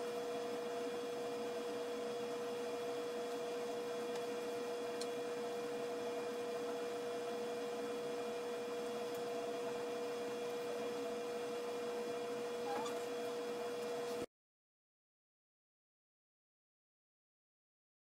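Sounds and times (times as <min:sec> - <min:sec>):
electrical hum: 0:00.0 - 0:14.3.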